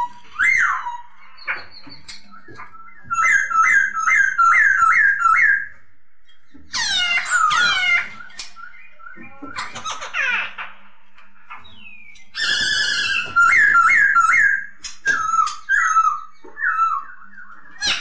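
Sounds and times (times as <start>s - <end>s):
bird whistling song: 0.0s - 10.0s, 11.6s - 18.0s
loud downward-sweeping bird calls: 6.7s - 10.6s, 11.6s - 18.0s.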